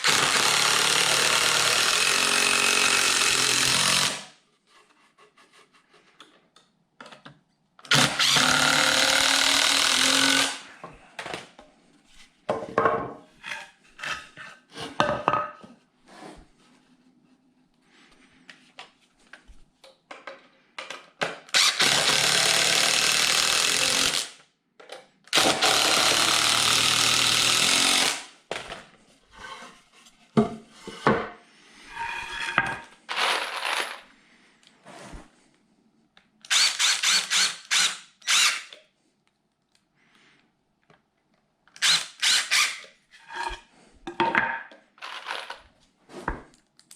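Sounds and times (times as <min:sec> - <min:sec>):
power drill running: 0:00.0 - 0:04.3, 0:07.9 - 0:10.6, 0:21.5 - 0:24.3, 0:25.3 - 0:28.3, 0:36.5 - 0:38.7, 0:41.8 - 0:42.9.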